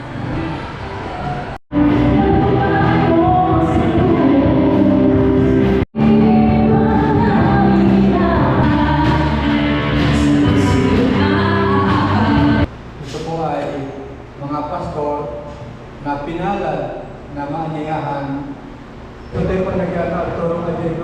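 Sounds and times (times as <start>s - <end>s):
music with singing: 1.7s - 12.7s.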